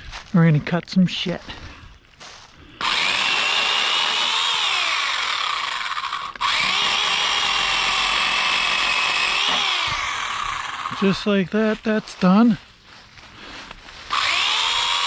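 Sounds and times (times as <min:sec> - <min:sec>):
chainsaw cutting wood: 0:02.8 - 0:12.0, 0:13.6 - 0:15.0.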